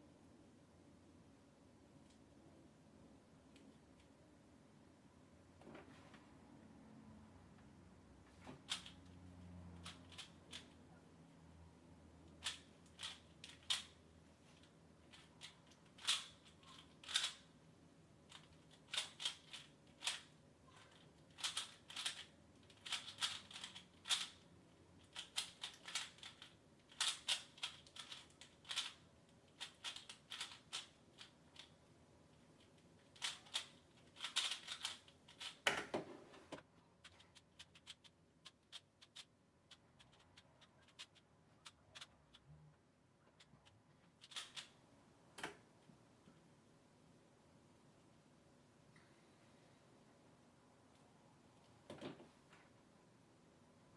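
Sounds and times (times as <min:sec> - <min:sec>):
puzzle cube plastic clicks: 0:08.6 - 0:09.0, 0:09.8 - 0:10.8, 0:12.2 - 0:14.0, 0:14.6 - 0:17.5, 0:18.3 - 0:31.8, 0:32.4 - 0:35.7, 0:37.0 - 0:42.5, 0:43.4 - 0:44.8.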